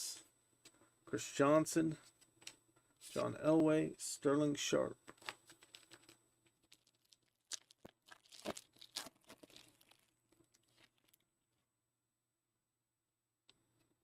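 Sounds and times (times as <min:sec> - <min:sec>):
cards and wrapper crinkling: 0:05.1 - 0:11.3.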